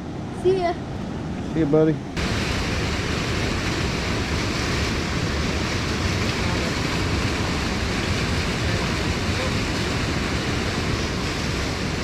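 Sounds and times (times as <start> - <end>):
creek water rushing: 2.2 - 12.0.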